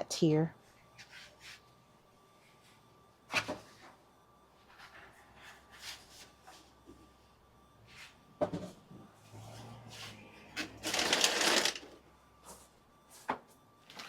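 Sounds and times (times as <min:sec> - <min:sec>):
packaging rustling: 0:10.8 - 0:11.9.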